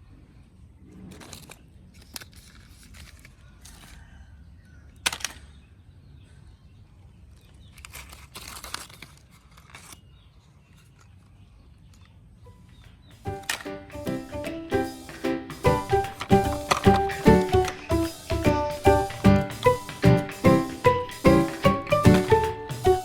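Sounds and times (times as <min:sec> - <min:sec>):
scraping and rustling: 0:00.9 - 0:04.0, 0:07.4 - 0:11.4
sharp knock: 0:13.3 - 0:23.0.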